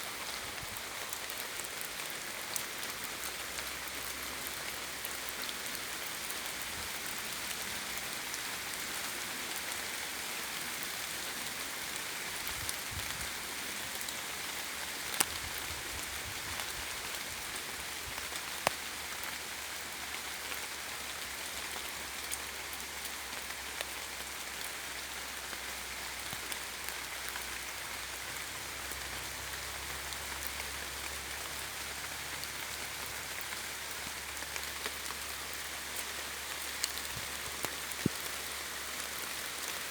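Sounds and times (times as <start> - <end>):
rain on leaves: 0.0 - 39.9
individual raindrop ticks: 10.8 - 20.7, 26.2 - 39.8.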